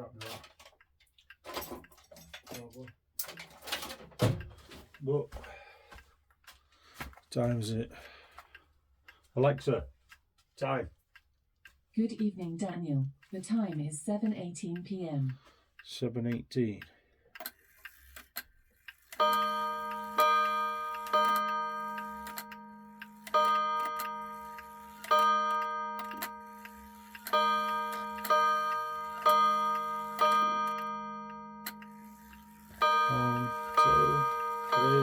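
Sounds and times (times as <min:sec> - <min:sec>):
clock ticking: 0:00.8 - 0:35.0
ringing metallic tone: 0:19.4 - 0:35.0.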